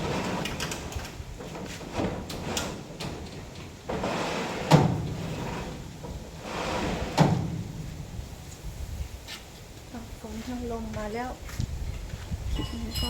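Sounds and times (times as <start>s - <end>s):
sliding panel scraping along track: 0.0s - 7.8s.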